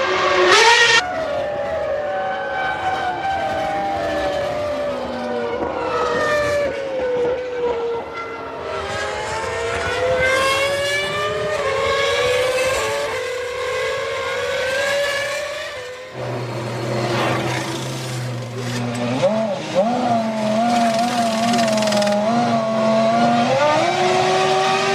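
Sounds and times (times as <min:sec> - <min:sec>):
race car engines at high revs: 0:00.0 - 0:01.1, 0:08.6 - 0:24.9.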